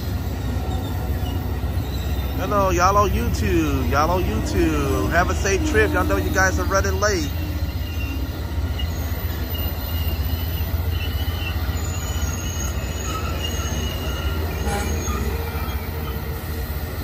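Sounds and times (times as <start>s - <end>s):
train wheels rumbling on rail: 0.0s - 17.0s
high-pitched wheel squeal: 3.5s - 16.8s.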